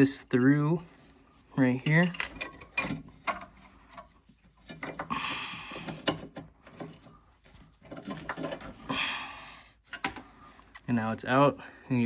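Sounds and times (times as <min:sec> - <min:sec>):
metal clicking and scraping: 0:01.7 - 0:07.2.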